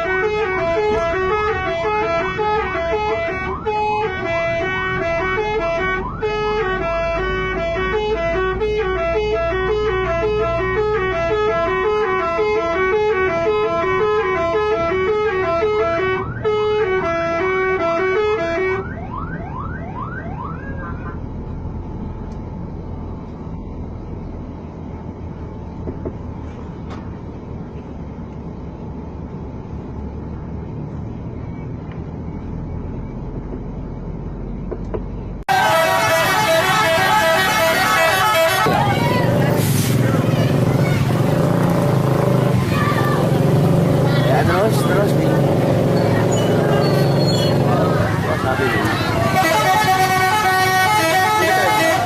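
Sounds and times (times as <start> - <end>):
bus musical horn jingle: 0.0 - 18.9, 35.4 - 43.4, 44.5 - 52.0
engine and traffic rumble: 0.0 - 52.0.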